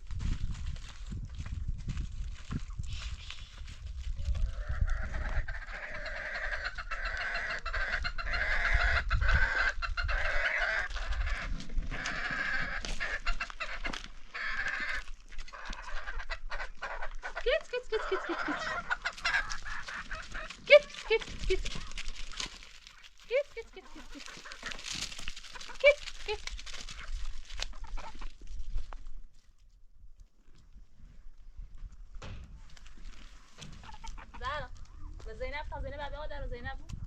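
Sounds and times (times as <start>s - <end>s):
chickens clucking: 4.3s - 28.8s, 33.4s - 35.3s.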